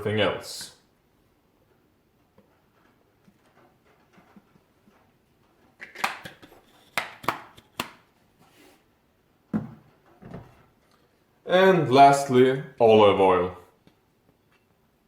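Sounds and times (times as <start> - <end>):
bottles and utensils knocking on counter: 9.5 - 10.5.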